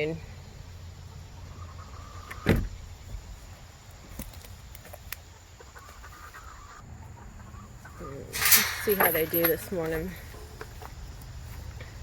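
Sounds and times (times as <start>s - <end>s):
hen clucking: 1.1s - 2.4s, 5.3s - 9.5s.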